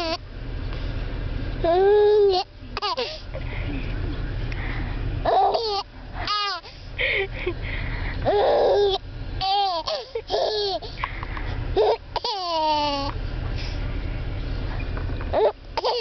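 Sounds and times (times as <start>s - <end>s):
car rumble: 0.0s - 16.0s
baby laughing: 1.9s - 3.2s, 5.3s - 7.6s, 8.3s - 13.2s, 15.4s - 16.0s.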